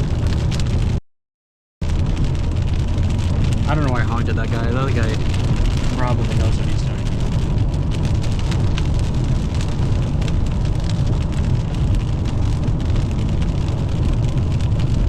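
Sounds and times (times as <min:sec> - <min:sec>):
car road and engine rumble: 0:00.0 - 0:01.0, 0:01.8 - 0:15.0
raindrops ticking on car roof: 0:00.0 - 0:01.0, 0:01.8 - 0:15.0.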